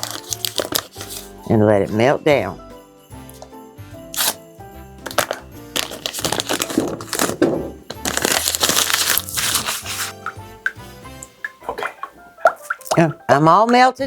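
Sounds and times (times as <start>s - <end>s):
background music with held notes: 0.0s - 14.0s
kitchen handling noise: 5.1s - 10.4s.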